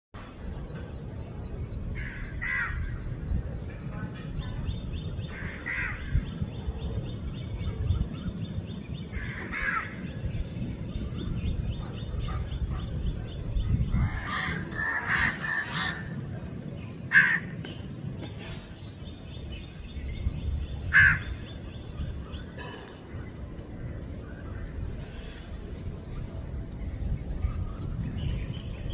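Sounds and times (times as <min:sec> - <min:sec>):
crows cawing: 0:17.1 - 0:17.5, 0:20.9 - 0:21.3.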